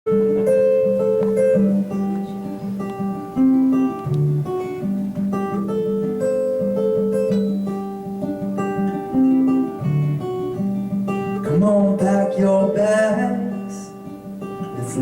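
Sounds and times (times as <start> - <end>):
acoustic guitar playing: 0.0 - 15.0
person singing: 11.4 - 15.0.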